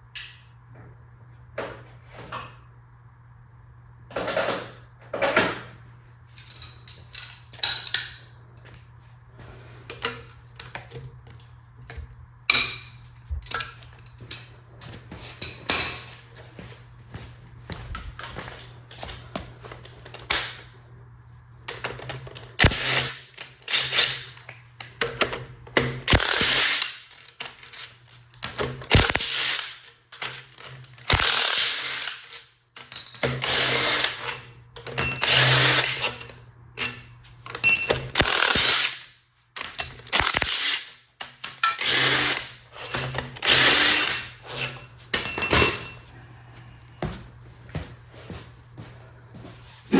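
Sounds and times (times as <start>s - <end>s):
power drill motor bursts: 22.6s - 24.3s, 26.0s - 27.8s, 28.4s - 29.9s, 31.0s - 32.4s, 33.2s - 34.4s, 35.0s - 36.2s, 37.6s - 44.8s.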